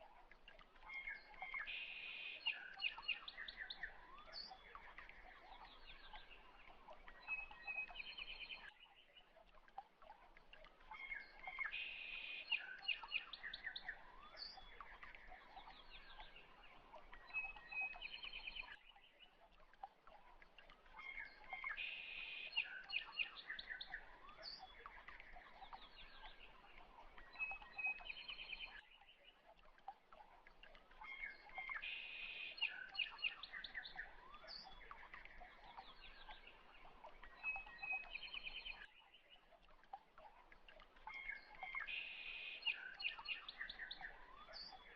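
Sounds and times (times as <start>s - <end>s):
bird chirps and trills: 20.2s - 44.9s.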